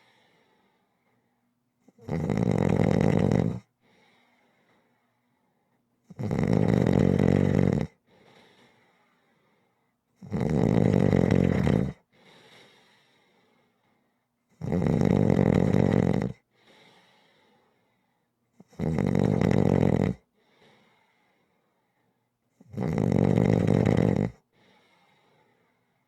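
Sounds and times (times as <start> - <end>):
quiet breath: 0.0 - 1.6, 3.6 - 5.9, 7.9 - 10.1, 11.5 - 14.4, 16.4 - 18.6, 20.2 - 22.4, 24.3 - 26.0
loud snoring: 1.9 - 3.7, 6.1 - 8.0, 10.2 - 12.0, 14.6 - 16.4, 18.6 - 20.3, 22.6 - 24.4.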